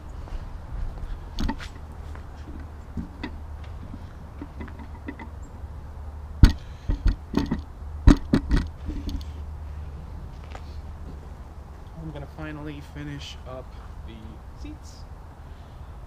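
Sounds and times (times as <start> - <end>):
steady low rumble: 0.0 - 16.0
sharp knocks and clicks: 1.4 - 1.8, 2.5 - 5.4, 6.4 - 9.3.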